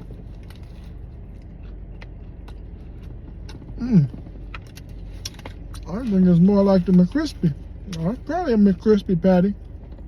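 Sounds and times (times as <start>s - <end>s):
car engine idling: 0.0s - 10.0s
person murmuring mm: 3.8s - 4.2s.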